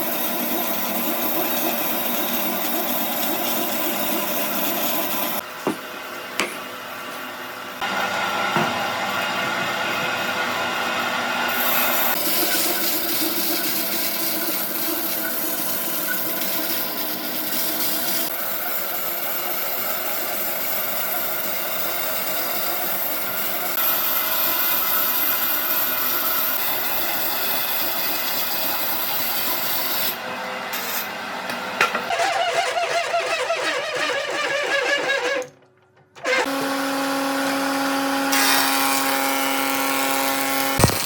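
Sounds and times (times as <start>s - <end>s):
tool rasping wood: 11.5s - 30.2s, 32.1s - 35.5s.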